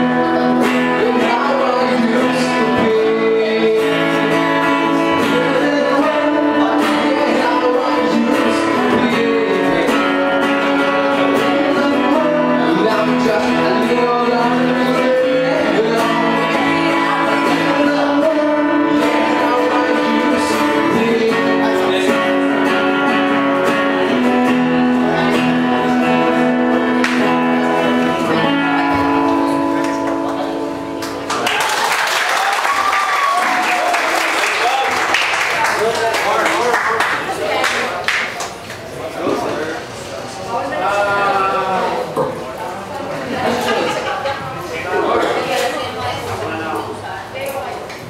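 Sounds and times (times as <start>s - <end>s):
person singing: 0.0s - 30.2s
live band music: 0.0s - 31.3s
strummed guitar: 0.0s - 31.6s.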